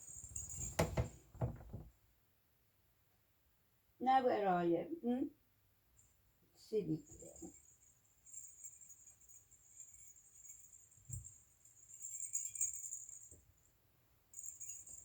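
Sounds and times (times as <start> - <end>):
small bell jingling: 0.0 - 1.3, 6.9 - 13.7, 14.3 - 15.0
soft thump: 0.6 - 1.9.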